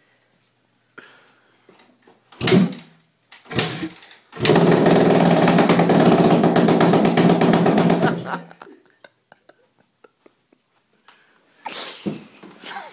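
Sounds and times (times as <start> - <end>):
dirt bike engine running loud: 4.4 - 8.3.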